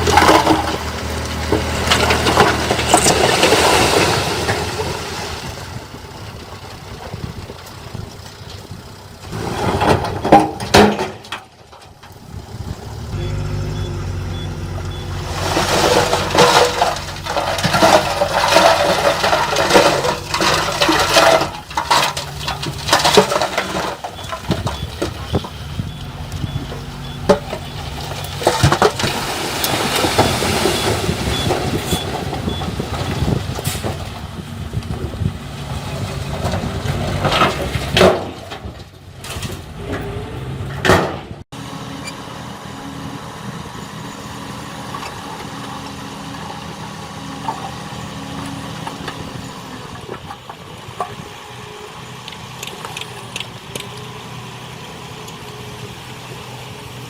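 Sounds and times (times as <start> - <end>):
soil and rock being dumped: 0.0 - 40.7
diesel construction machinery running: 0.0 - 57.0.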